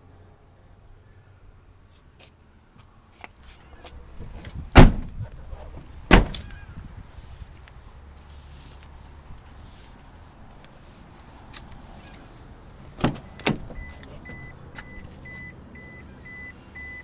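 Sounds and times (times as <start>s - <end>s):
truck door shutting: 4.2s - 6.6s, 12.9s - 15.4s.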